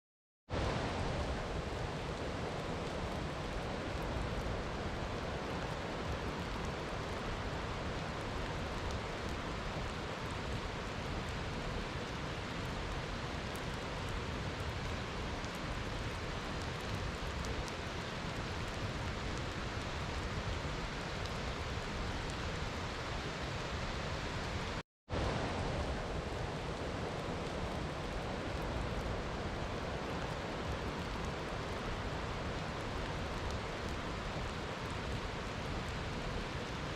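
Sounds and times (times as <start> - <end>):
steady rainfall: 0.5 - 36.9.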